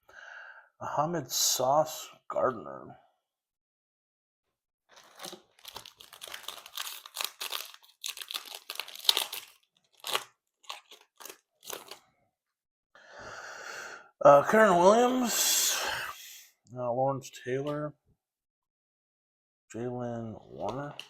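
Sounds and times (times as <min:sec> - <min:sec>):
foil wrapper tearing and crinkling: 0:04.9 - 0:12.0.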